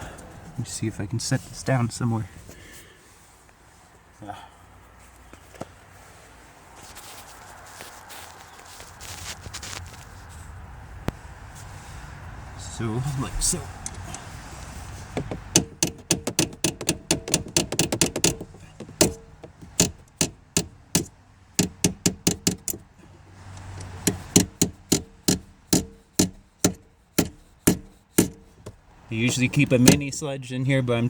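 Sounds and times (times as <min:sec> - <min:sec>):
hammer tapping metal pin punch: 0:15.1 - 0:28.8.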